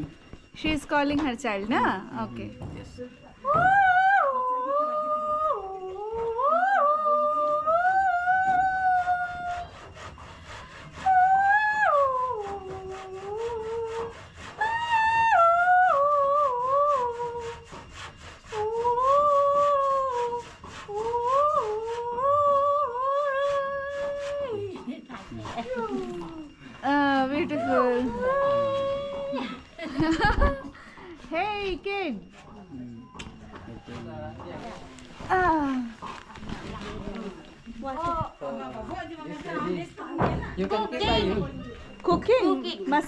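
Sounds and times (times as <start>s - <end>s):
woman singing wordless call: 3.3s - 9.8s, 11.0s - 17.7s, 18.4s - 25.0s, 25.8s - 29.8s.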